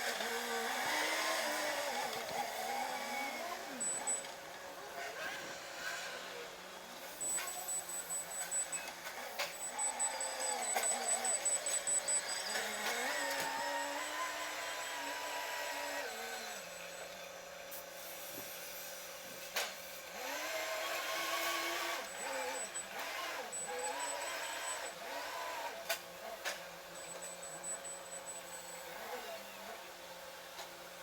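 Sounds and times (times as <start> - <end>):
motor hum rising and falling: 9.4 - 16.7.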